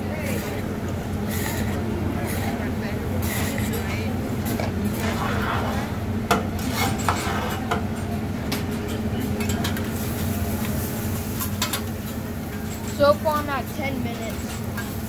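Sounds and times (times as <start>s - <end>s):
steady low hum: 0.0s - 15.0s
metal spatulas scraping griddle: 1.3s - 2.6s, 3.2s - 6.0s, 6.6s - 7.8s.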